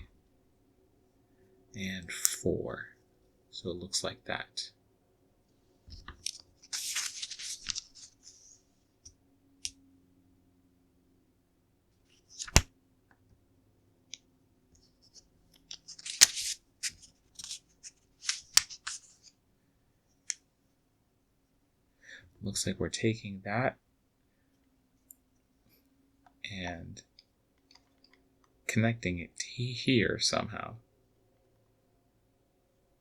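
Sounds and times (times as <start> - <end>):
plastic pieces rustling and clicking: 15.7 - 17.6.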